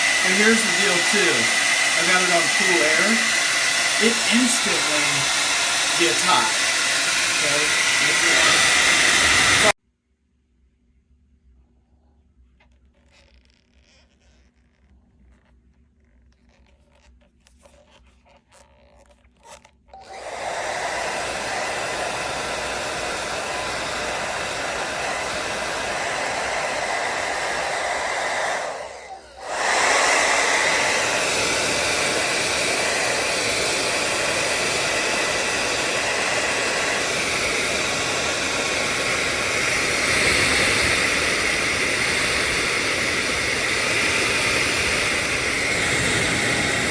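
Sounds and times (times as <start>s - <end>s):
hair dryer blowing: 0.0s - 9.8s, 20.0s - 46.9s.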